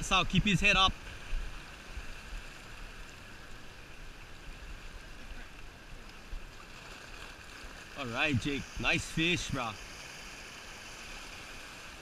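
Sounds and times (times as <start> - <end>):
seawater rushing: 0.0 - 12.0.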